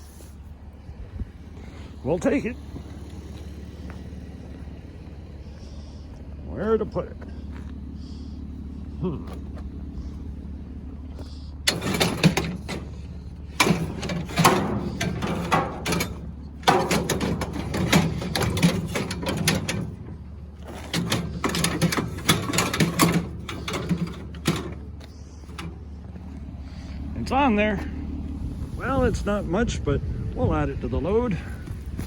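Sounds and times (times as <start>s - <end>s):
steady low hum: 0.0s - 32.0s
scrap metal clanking and rattling: 10.0s - 27.0s.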